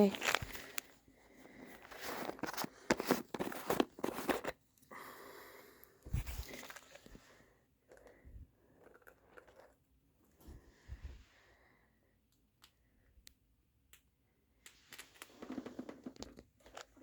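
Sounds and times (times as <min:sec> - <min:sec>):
chinchilla crunching and gnawing: 0:08.7 - 0:09.8.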